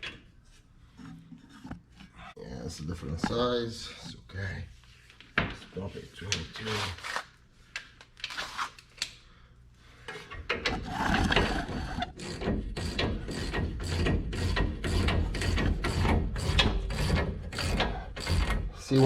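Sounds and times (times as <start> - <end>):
tool scraping and handling: 0.0 - 2.4, 10.0 - 19.0.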